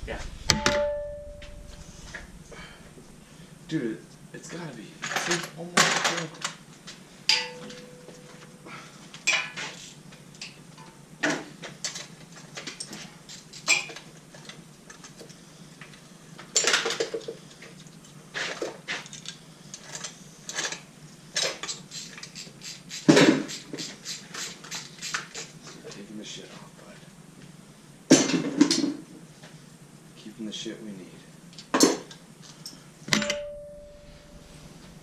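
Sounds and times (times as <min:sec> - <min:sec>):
metal tools and parts clanking: 0:05.0 - 0:06.6, 0:07.3 - 0:08.4, 0:32.6 - 0:35.0.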